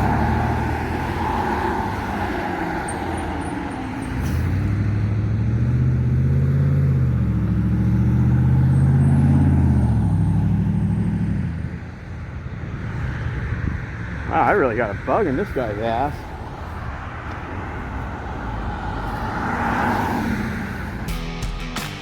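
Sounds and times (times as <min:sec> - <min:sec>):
car engine accelerating: 0:04.1 - 0:11.9.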